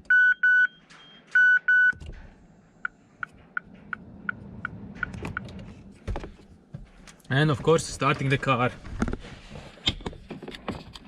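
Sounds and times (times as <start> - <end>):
car warning double beeps: 0.0 - 2.0.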